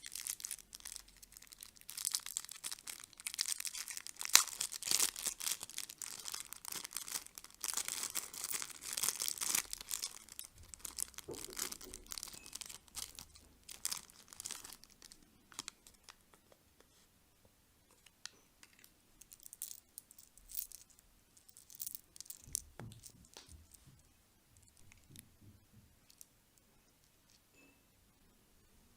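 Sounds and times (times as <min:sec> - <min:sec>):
plastic packaging crinkling: 0:00.0 - 0:16.4, 0:18.6 - 0:23.9.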